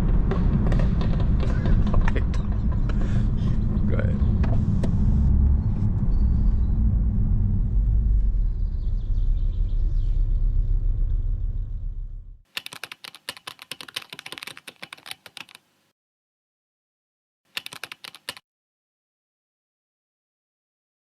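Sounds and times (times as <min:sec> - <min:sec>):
car engine and road rumble: 0:00.0 - 0:12.4
rapid sharp clicking: 0:12.6 - 0:15.7, 0:17.5 - 0:18.4.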